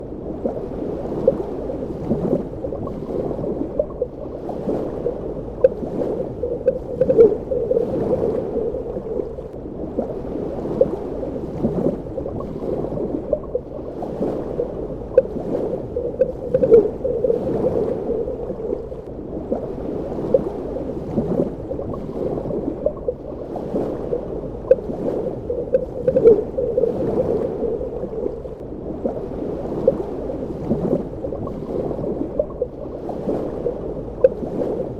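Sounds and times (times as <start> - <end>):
underwater water wash: 0.0 - 34.9
bubbling and gurgling pops: 2.0 - 10.2, 10.8 - 19.7, 21.1 - 23.3, 23.9 - 28.6, 30.6 - 32.8, 34.1 - 34.6.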